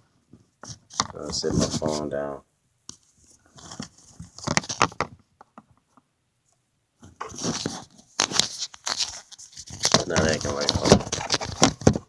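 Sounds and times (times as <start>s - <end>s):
phone handling knocks and rustles: 9.9s - 12.0s.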